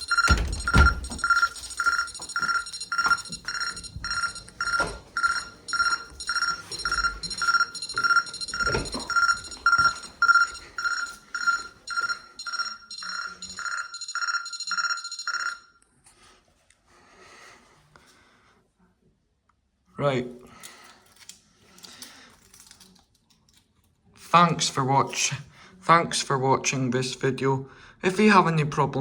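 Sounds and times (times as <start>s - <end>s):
alarm beeping: 0.0s - 15.6s.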